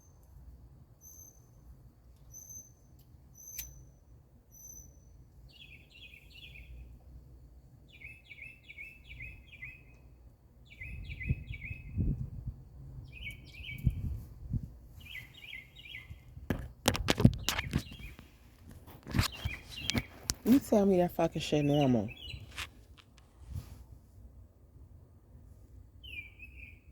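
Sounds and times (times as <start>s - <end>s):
bird singing: 1.0s - 1.6s, 2.3s - 3.9s, 4.5s - 6.9s, 7.9s - 10.0s, 10.6s - 12.2s, 13.0s - 14.0s, 15.0s - 16.2s, 19.2s - 22.6s, 26.0s - 26.9s.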